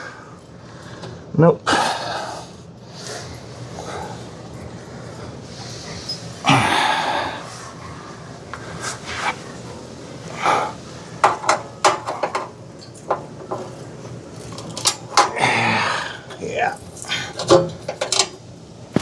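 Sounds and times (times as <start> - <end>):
loud breathy noises: 0.0 - 11.3, 15.3 - 16.4.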